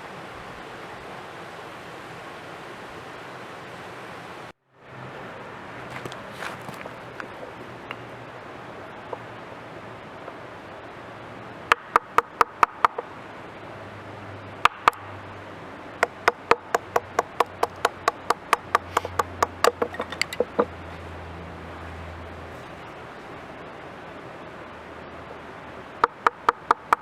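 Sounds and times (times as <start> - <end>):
sharp knocks: 11.7 - 13.1, 14.6 - 15.1, 16.0 - 20.8, 26.0 - 27.0
light taps: 16.0 - 20.8.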